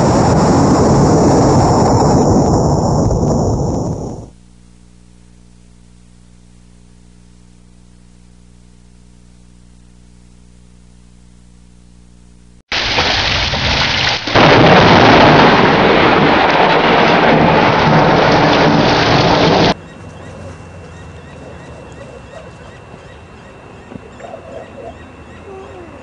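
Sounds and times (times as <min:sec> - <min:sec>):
loud thunder crash: 0:00.0 - 0:04.3, 0:12.8 - 0:19.8
faint electrical hum: 0:03.6 - 0:12.6.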